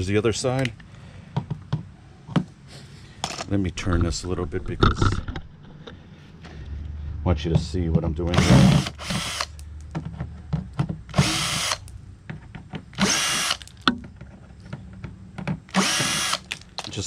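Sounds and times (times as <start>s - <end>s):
power drill driving screws: 8.3s - 9.6s, 11.1s - 11.9s, 12.9s - 13.7s, 15.7s - 16.6s
handling clicks and knocks: 16.4s - 17.0s.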